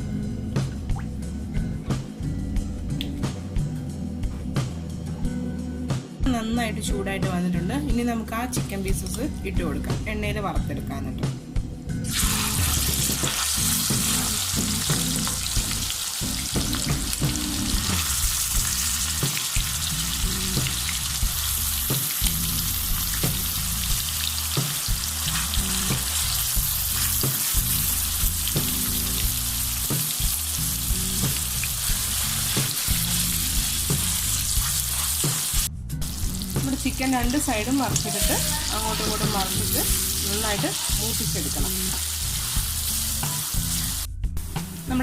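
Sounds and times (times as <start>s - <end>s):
chicken deep-frying in oil: 12.1s - 44.1s.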